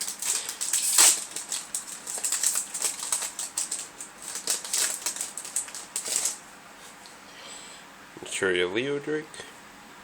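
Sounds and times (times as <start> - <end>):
cards crinkling and rustling: 0.0 - 6.4.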